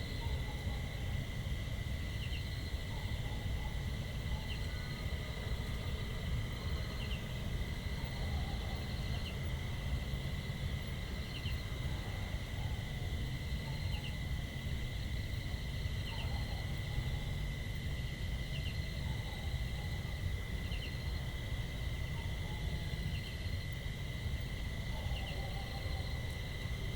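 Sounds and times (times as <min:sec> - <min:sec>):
constant low rumble: 0:00.0 - 0:26.9
insects droning: 0:00.0 - 0:26.9.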